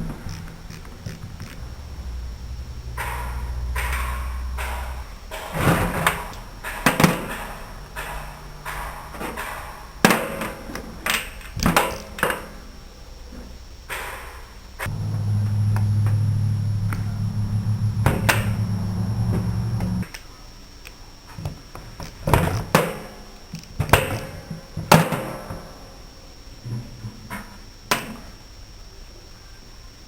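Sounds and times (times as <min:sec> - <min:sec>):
small electric motor humming: 0:14.8 - 0:20.0.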